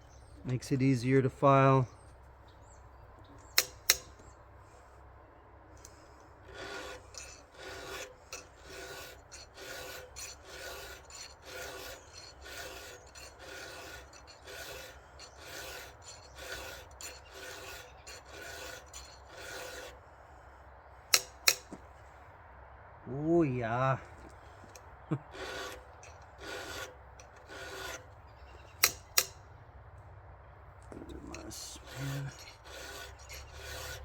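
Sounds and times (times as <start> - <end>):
file rasping on saw chain: 3.4 - 4.4, 5.8 - 20.1, 21.1 - 21.8, 24.1 - 29.4, 30.9 - 34.0.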